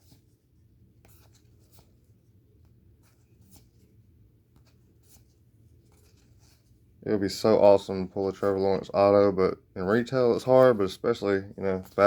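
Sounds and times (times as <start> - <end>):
low room hum: 0.0 - 12.0
trading cards rustling and ticking: 4.6 - 6.8.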